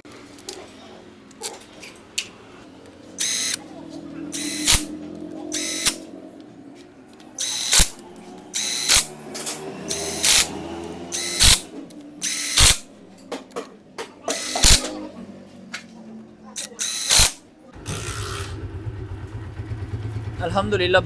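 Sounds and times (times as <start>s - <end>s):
power driver whine: 3.1s - 3.7s, 4.3s - 6.1s, 7.4s - 12.9s, 14.3s - 15.0s, 16.6s - 17.4s.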